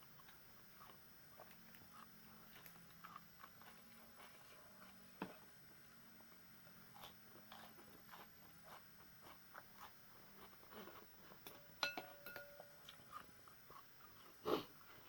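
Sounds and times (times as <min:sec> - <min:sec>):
soft chewing: 0:00.0 - 0:15.0
utensil clinking against bowl: 0:11.4 - 0:12.9.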